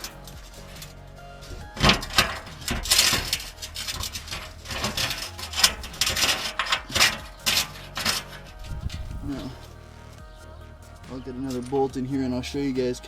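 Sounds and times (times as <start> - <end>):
metal plate scraping and clicking: 0.0 - 9.5.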